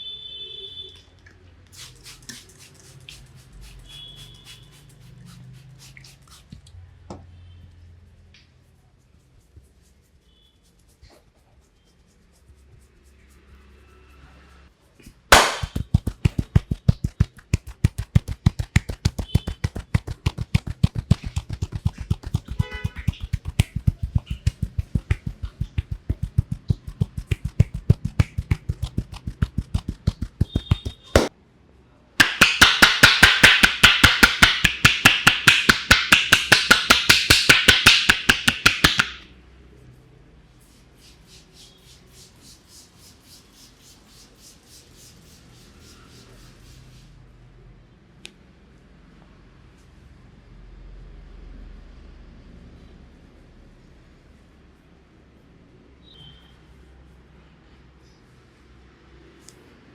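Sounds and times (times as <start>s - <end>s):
hands patting on head: 15.1s - 31.3s, 32.2s - 39.2s
sharp clapping strikes: 15.3s - 31.3s, 32.2s - 39.2s.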